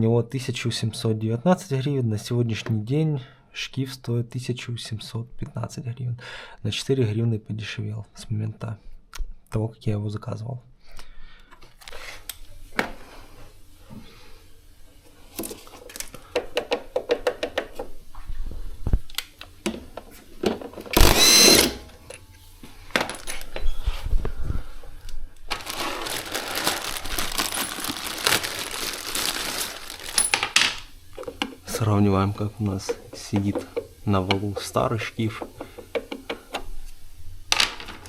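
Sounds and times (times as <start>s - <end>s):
loud metal scrape: 21.0s - 21.9s
metal tools clinking: 21.0s - 22.2s, 30.1s - 30.6s.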